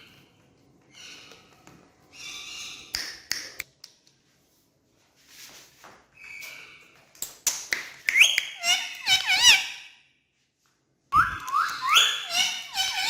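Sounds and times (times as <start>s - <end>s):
parrot high-pitched calls: 8.1s - 9.9s, 11.2s - 13.0s.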